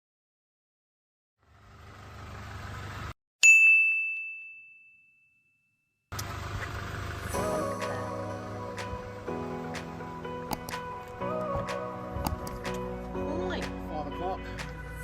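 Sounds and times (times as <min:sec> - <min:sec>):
high-pitched bell ding: 0:03.4 - 0:05.8.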